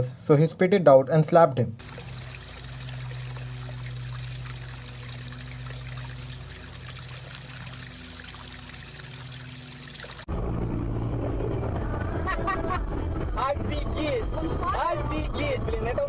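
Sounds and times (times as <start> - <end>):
water trickling: 1.8 - 10.3.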